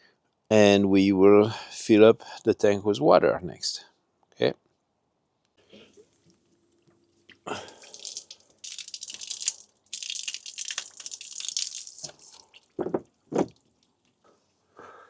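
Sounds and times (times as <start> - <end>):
water splashing with rattling: 7.2 - 14.0.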